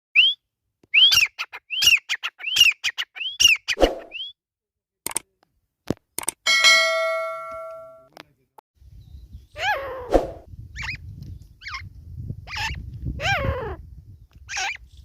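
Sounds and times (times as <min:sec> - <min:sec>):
bird whistled calls: 0:00.2 - 0:04.4
sharp clicks: 0:05.0 - 0:06.4
metallic clang ringing: 0:06.5 - 0:08.1.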